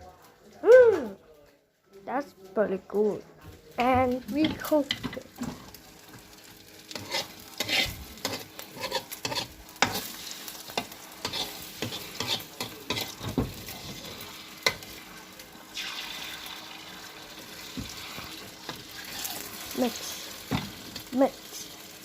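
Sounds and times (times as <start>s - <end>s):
frying sizzle: 2.1s - 22.0s
utensil scraping against a pan: 6.9s - 14.9s, 18.9s - 20.2s.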